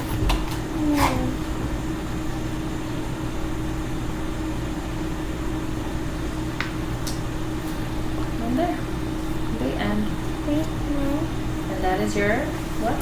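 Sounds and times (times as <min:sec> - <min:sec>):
low background hum: 0:00.0 - 0:13.0.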